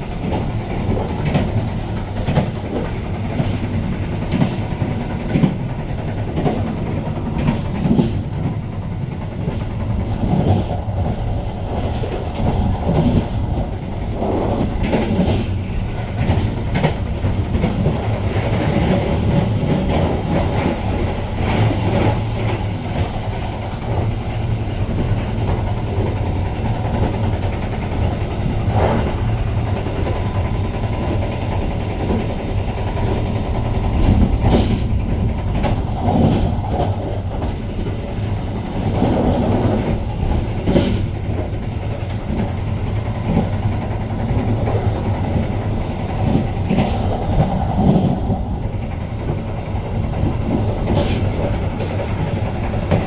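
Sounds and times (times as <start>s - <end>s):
train rumbling along track: 0.0s - 53.0s
train wheels clacking over rails: 0.0s - 53.0s.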